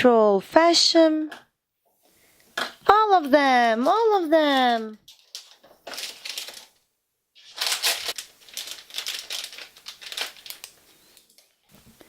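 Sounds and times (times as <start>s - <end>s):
foil and plastic wrappers crinkling: 3.4s - 6.8s, 7.4s - 12.0s
toy packs clattering: 3.6s - 6.8s, 7.4s - 11.4s.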